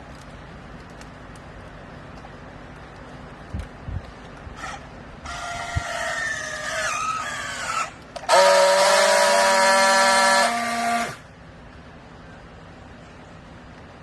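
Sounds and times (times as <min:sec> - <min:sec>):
hydraulic pump whining: 0:07.0 - 0:11.2.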